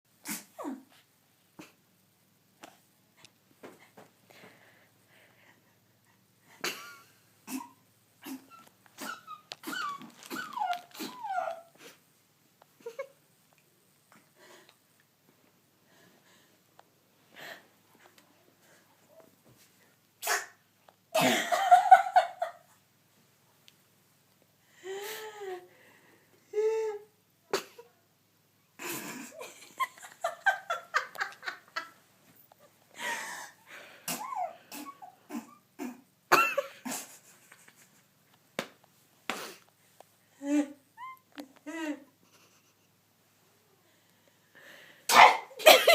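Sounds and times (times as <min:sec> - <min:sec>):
woman sneezing: 0:20.2 - 0:20.6, 0:45.1 - 0:45.9
laughter: 0:21.2 - 0:22.8, 0:29.0 - 0:32.0, 0:36.4 - 0:38.1, 0:42.2 - 0:42.9, 0:45.6 - 0:45.9.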